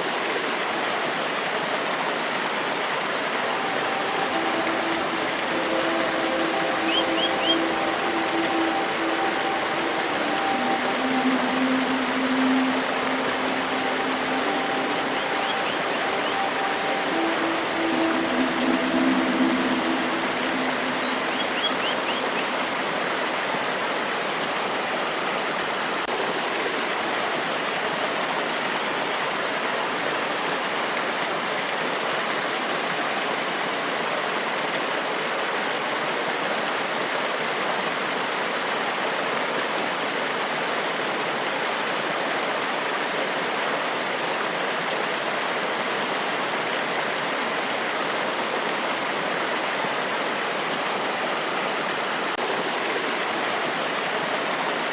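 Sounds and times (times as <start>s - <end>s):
water rushing over rocks: 0.0s - 54.9s.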